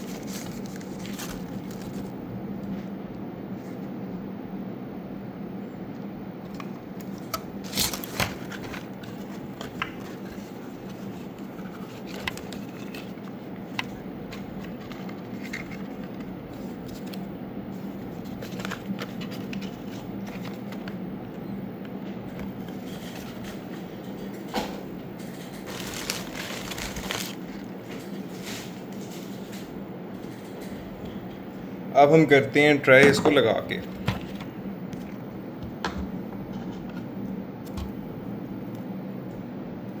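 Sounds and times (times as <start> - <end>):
packaging clicks and crinkles: 0.0 - 2.1, 6.5 - 21.0, 25.2 - 28.1
steady low hum: 0.0 - 40.0.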